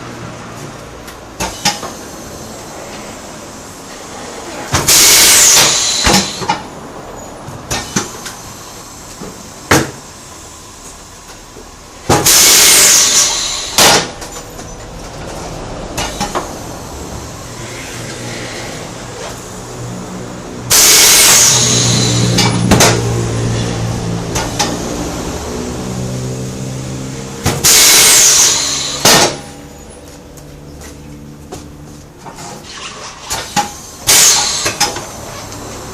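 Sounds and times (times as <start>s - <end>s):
compressed air hissing blasts: 4.9s - 6.5s, 12.2s - 14.1s, 20.7s - 22.5s, 27.6s - 29.2s.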